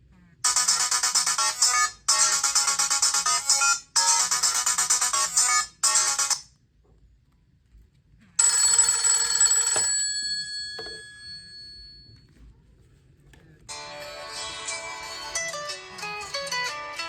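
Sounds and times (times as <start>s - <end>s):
phone ringtone tune: 0.4s - 6.4s, 8.4s - 12.0s.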